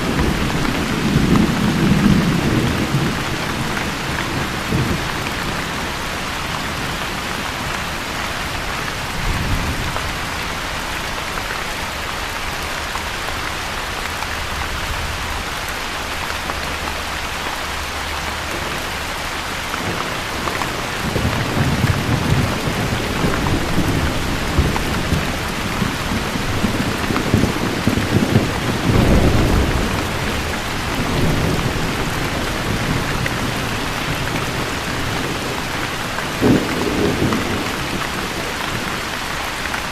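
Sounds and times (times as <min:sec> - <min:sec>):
heavy rain falling: 0:00.0 - 0:39.9
low thunder rumbling: 0:18.5 - 0:39.2.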